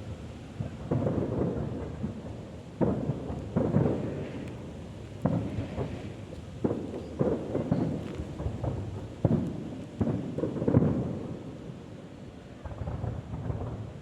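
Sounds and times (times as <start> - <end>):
firework shells booming: 5.2 - 11.4.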